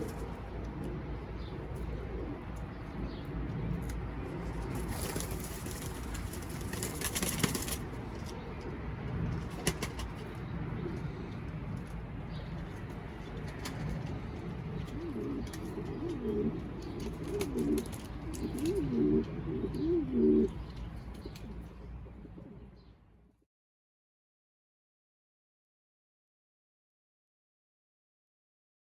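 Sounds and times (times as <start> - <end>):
pigeons cooing: 0.0 - 23.0.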